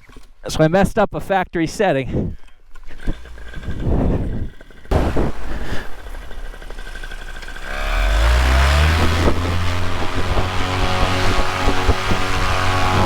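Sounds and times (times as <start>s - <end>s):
paramotor engine revving: 3.0s - 13.0s.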